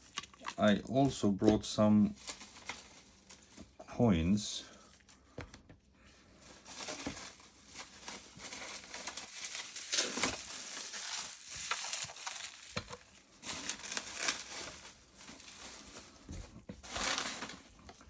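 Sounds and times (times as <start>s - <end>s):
packaging crinkling and rustling: 2.1s - 3.8s, 6.4s - 18.0s.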